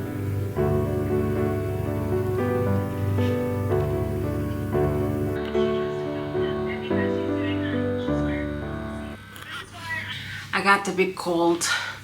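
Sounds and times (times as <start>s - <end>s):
instrumental music: 0.0s - 9.2s.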